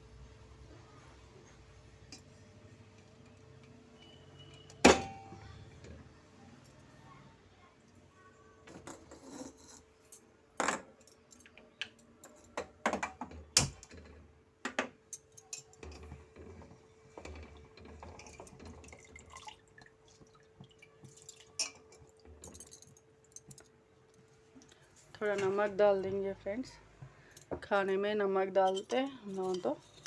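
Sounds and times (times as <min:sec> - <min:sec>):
metal pots clinking: 0:04.0 - 0:05.6, 0:17.2 - 0:20.3, 0:21.0 - 0:23.0.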